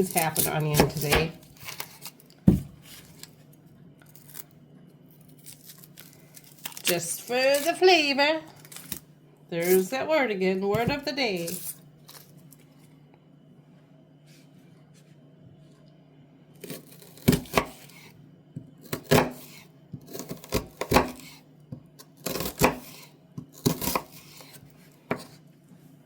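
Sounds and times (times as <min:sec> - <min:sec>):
knife cutting an onion: 0:00.0 - 0:03.3, 0:05.2 - 0:07.9, 0:10.7 - 0:12.2, 0:16.6 - 0:18.2, 0:18.8 - 0:25.4.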